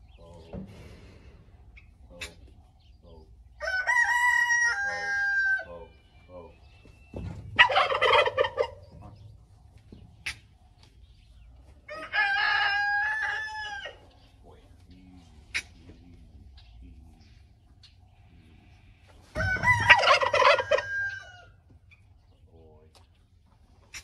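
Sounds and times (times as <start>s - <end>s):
rooster crowing: 3.6s - 5.9s, 11.9s - 14.0s, 19.3s - 21.6s.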